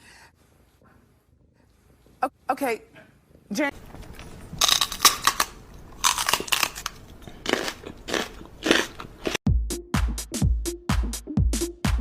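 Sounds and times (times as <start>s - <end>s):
crunching and crackling: 3.7s - 9.4s.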